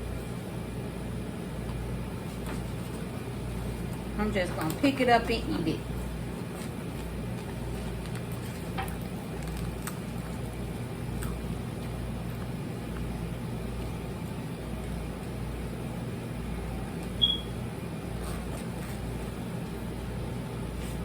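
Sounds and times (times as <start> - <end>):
air fryer fan hum: 0.0 - 21.0
short high beep: 17.2 - 17.5.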